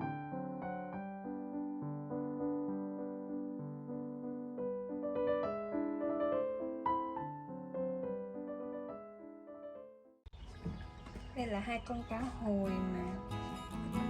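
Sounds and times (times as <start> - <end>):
soft piano music: 0.0 - 14.0.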